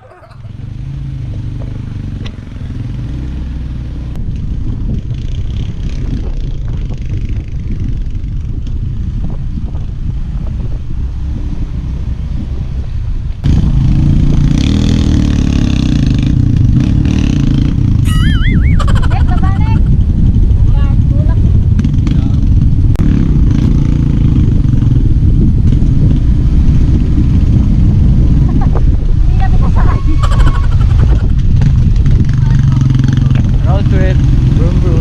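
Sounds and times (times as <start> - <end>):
motorcycle engine running: 13.4 - 35.0.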